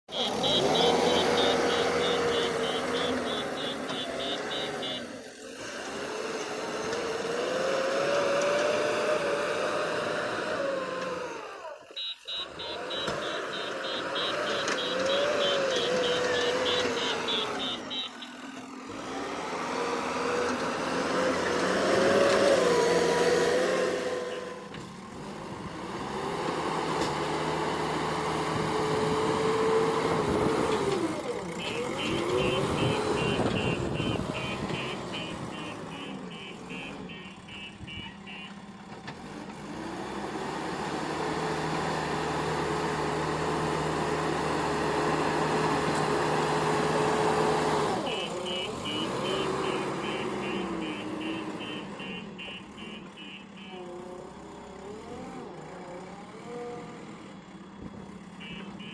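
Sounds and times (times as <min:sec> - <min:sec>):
diesel engine revving: 0:00.0 - 0:58.9
rapid high beeps: 0:00.1 - 0:05.1, 0:11.9 - 0:18.3, 0:31.6 - 0:38.5, 0:48.1 - 0:53.7.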